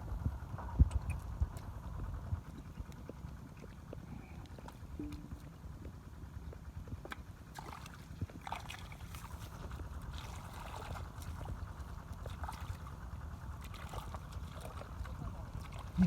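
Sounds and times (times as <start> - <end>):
small splashes and clicks: 7.0 - 13.0, 13.6 - 16.0
muddy water sloshing: 7.1 - 16.0.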